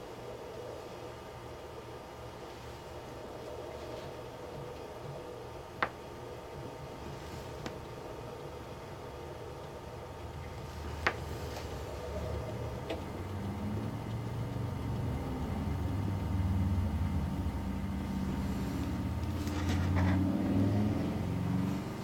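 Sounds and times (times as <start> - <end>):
vehicle engine: 10.6 - 22.0.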